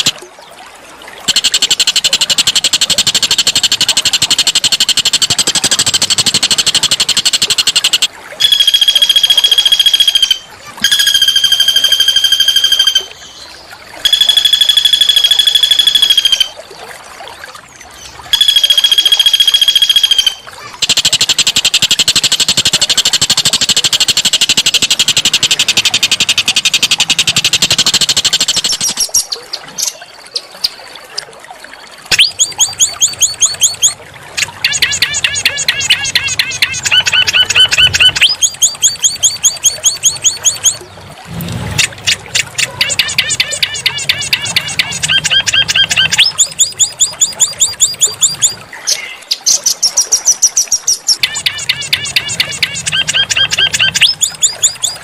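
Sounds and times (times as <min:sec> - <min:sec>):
songbird singing trills: 0:32.1 - 0:40.9, 0:42.4 - 0:55.0.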